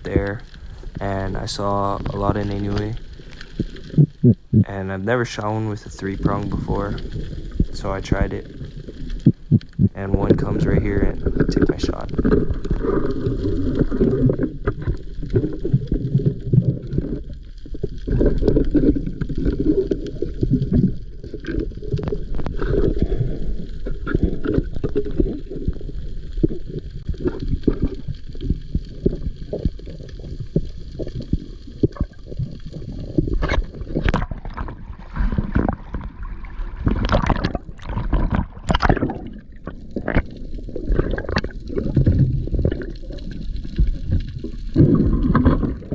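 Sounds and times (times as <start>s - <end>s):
muffled underwater rumble: 0.0s - 45.9s
underwater clicks and knocks: 23.8s - 45.9s.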